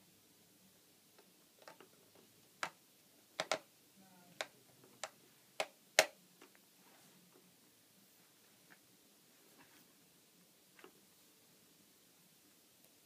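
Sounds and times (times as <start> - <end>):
sharp clicks and taps: 3.4 - 3.6, 4.4 - 6.6.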